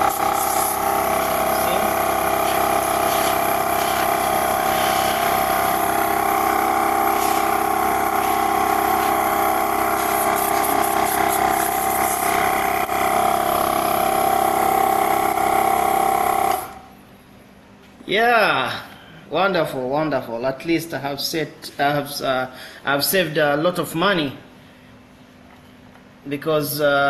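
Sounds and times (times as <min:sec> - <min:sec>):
air compressor running: 0:00.0 - 0:17.4.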